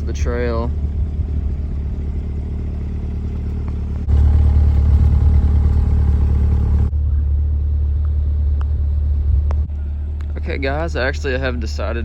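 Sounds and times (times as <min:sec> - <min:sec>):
car engine idling: 0:00.0 - 0:12.0.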